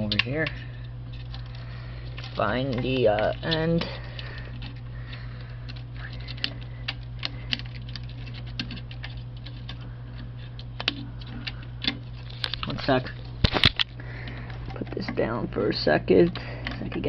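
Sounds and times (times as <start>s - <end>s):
film reel clicks and taps: 0.0s - 1.5s
steady low hum: 0.0s - 17.0s.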